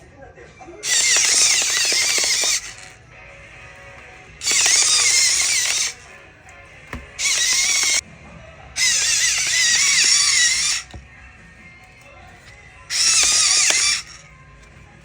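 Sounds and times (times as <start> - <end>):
quiet background music: 0.0 - 15.0
kitchen appliance motor whining: 0.8 - 3.0, 3.8 - 8.0, 8.8 - 11.1, 12.4 - 14.8.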